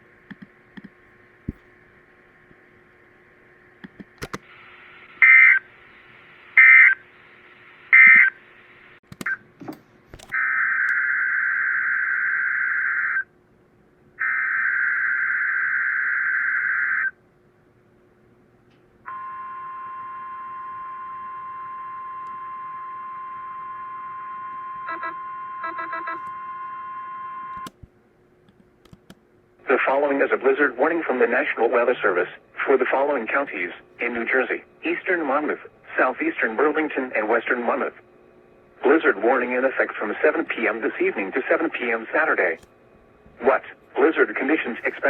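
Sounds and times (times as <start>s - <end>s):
steady attention tone: 19.0s - 27.8s.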